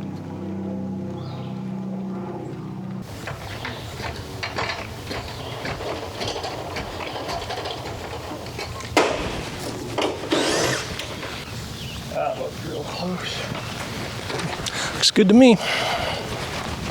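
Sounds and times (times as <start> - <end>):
motor drone: 0.0 - 6.4, 8.4 - 11.9
sharp clicks and metallic clatter: 3.0 - 11.5.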